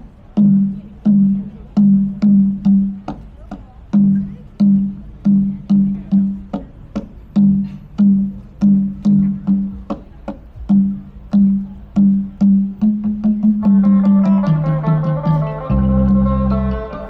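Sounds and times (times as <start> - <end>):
low plucked notes: 0.0 - 6.7, 7.4 - 17.0.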